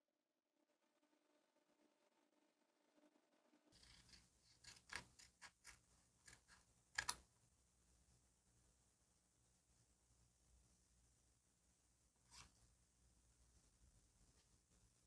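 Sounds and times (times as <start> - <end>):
small sharp clicks and taps: 3.9 - 7.2.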